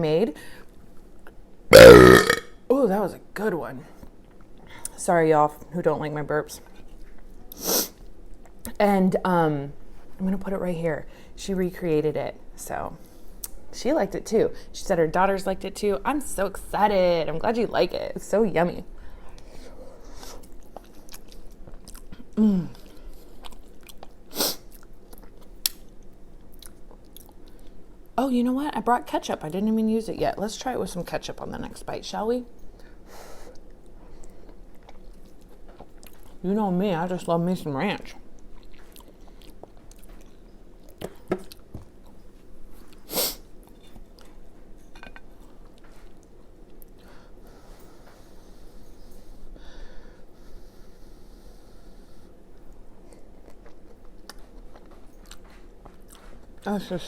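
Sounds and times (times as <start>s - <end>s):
person chewing food: 20.1s - 27.8s, 33.6s - 36.4s, 38.4s - 47.0s, 52.6s - 56.6s.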